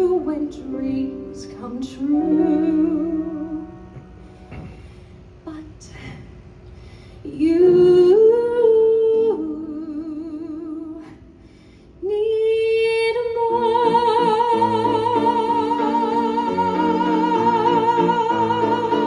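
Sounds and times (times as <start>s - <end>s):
woman singing with vibrato: 0.0s - 4.2s, 7.3s - 11.3s, 12.0s - 19.0s.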